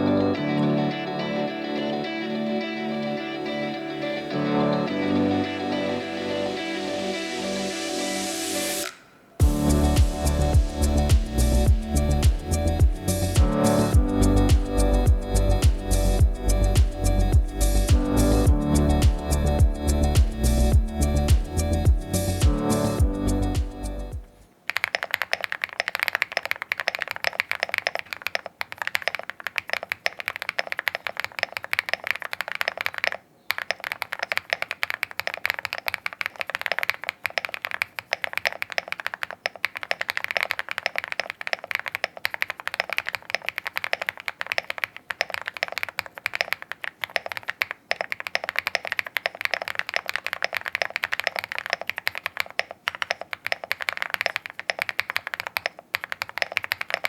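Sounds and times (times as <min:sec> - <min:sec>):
mechanical keyboard typing: 0:08.8 - 0:57.0.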